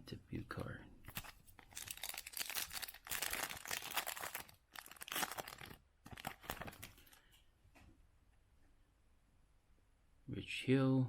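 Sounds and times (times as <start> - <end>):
foil wrapper crinkling and tearing: 1.1 - 7.2.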